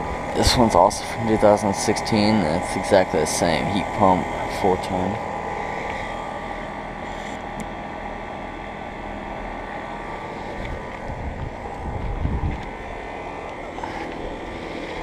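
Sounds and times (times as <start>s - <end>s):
compressor hum: 0.0s - 15.0s
condenser fans whooshing: 0.0s - 15.0s.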